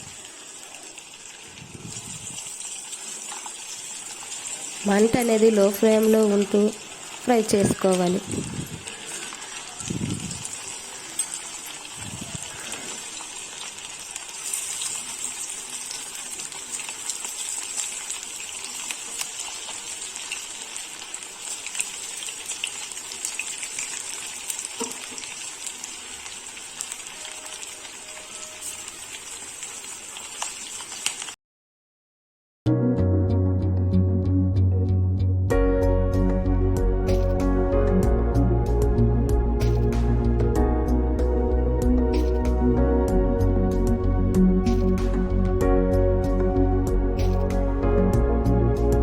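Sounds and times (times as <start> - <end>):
chicken deep-frying in hot oil: 0.0 - 31.4.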